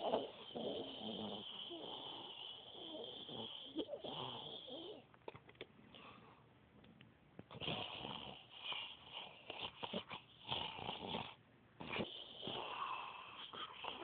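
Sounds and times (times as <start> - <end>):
woman snoring: 0.0 - 5.0.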